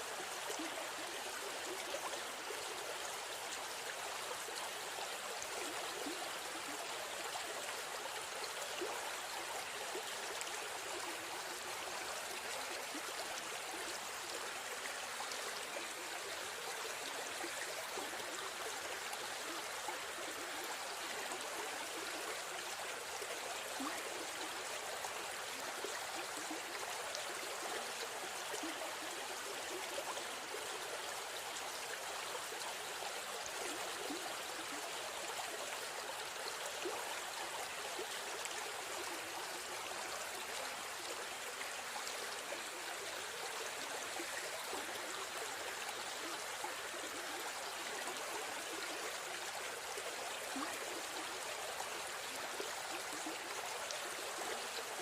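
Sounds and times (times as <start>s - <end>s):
babbling river stream: 0.0s - 55.0s.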